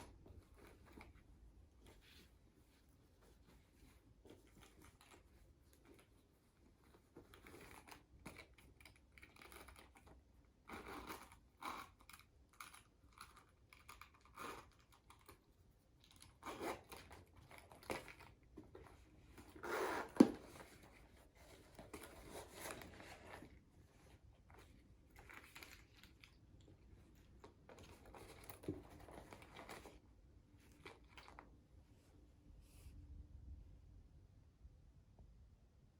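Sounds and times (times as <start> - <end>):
paper and packaging rustling: 16.2 - 30.0.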